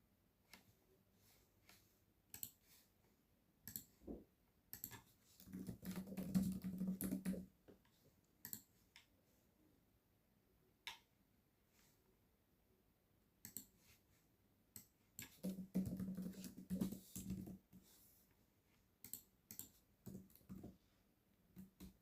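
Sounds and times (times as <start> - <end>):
mouse clicking: 2.3 - 2.6, 3.6 - 4.0, 4.7 - 7.4, 8.4 - 9.1, 13.4 - 13.7, 19.0 - 20.5.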